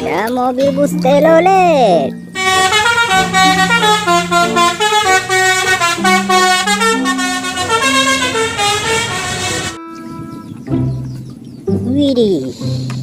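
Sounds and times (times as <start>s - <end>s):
bus horn playing a melody: 2.3s - 10.6s.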